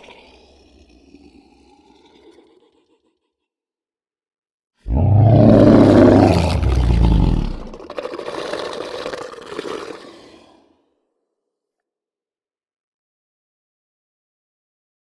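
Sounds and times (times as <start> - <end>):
deep monster roar: 4.9 - 7.8.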